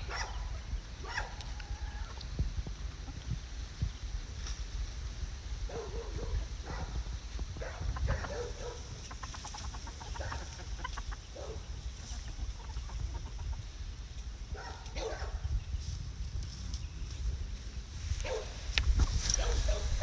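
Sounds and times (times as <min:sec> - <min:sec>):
chickens clucking: 0:00.0 - 0:15.5.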